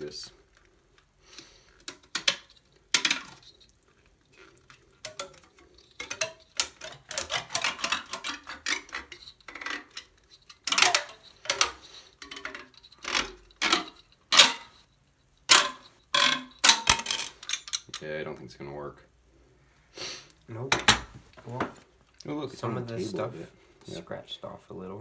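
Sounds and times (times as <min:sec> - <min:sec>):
crimper clicking and scraping on disc: 0:05.0 - 0:11.8.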